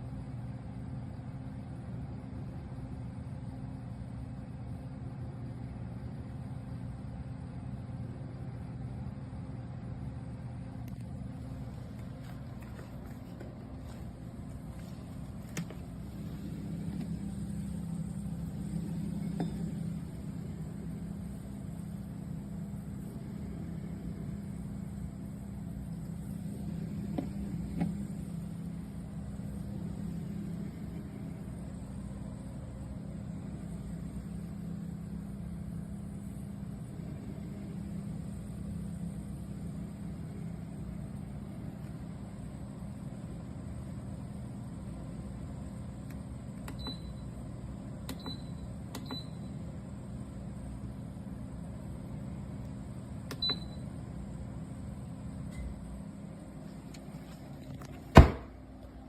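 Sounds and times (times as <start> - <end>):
car fridge compressor humming: 0.0 - 59.0
short clicks with high beeps: 48.1 - 49.5, 53.3 - 53.8.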